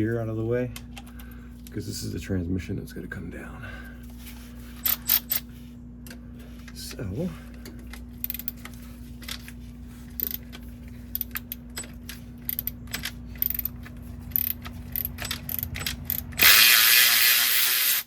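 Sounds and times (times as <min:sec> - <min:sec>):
steady low hum: 0:00.0 - 0:17.2
ratchet wrench clicking: 0:04.8 - 0:05.4, 0:08.2 - 0:08.7, 0:10.1 - 0:18.0.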